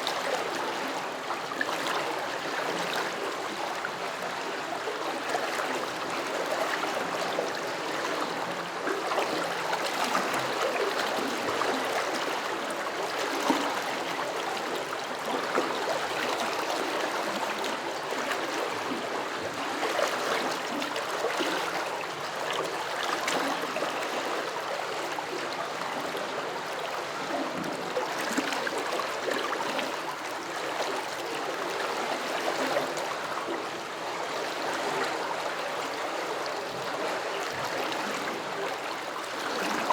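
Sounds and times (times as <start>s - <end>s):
stream flowing over stones: 26.4s - 39.9s.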